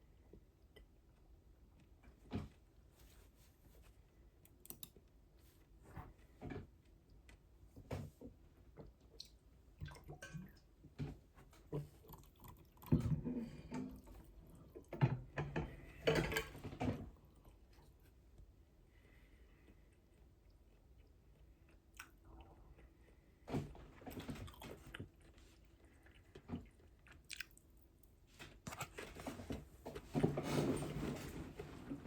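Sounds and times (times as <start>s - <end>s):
wet chewing: 11.8s - 13.0s, 19.6s - 23.2s, 24.2s - 28.9s.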